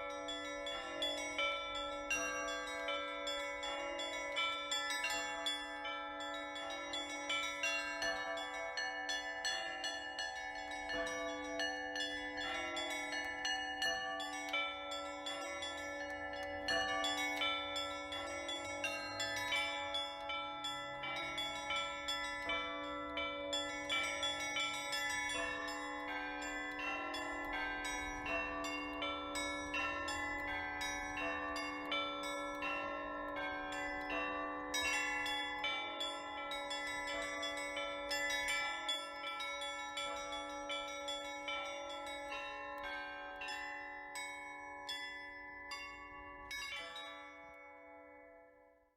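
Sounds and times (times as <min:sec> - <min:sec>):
church bells pealing: 0:16.6 - 0:43.9.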